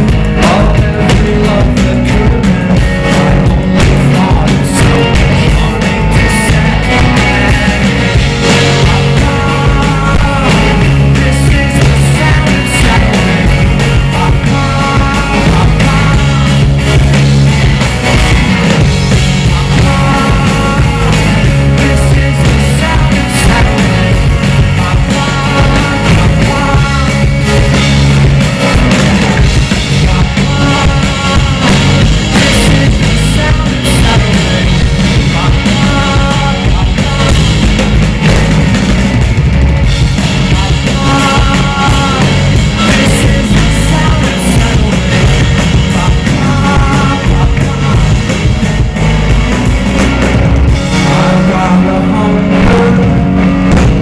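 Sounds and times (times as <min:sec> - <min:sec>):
bass guitar: 0:00.0 - 0:54.0
drums: 0:00.0 - 0:54.0
electric guitars: 0:00.0 - 0:54.0
rock band playing live: 0:00.0 - 0:54.0.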